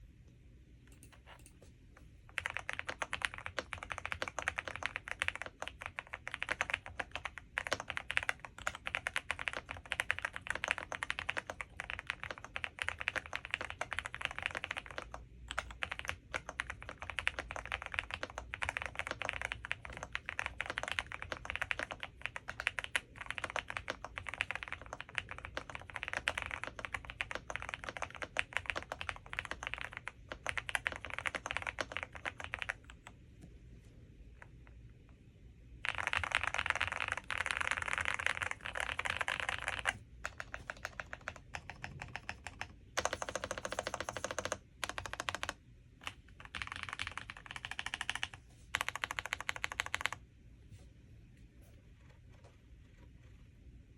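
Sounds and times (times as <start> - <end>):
mechanical keyboard typing: 2.3 - 33.2, 35.8 - 50.2.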